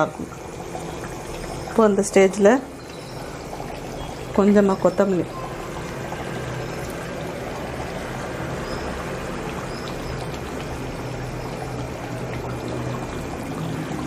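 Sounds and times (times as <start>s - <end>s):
curry bubbling in a pan: 0.0s - 14.0s.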